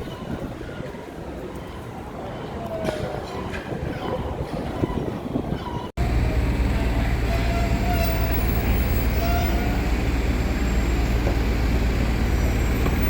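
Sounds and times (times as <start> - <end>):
vehicle rumbling: 6.0 - 13.0.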